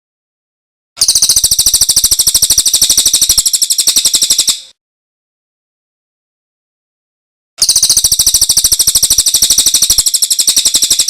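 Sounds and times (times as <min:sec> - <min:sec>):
songbird trilling: 0:01.0 - 0:04.7, 0:07.6 - 0:11.0.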